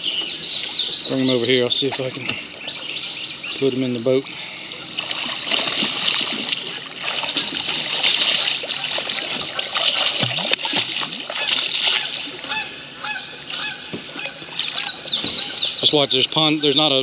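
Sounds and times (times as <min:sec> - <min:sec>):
fish splashing water: 0:04.7 - 0:15.6.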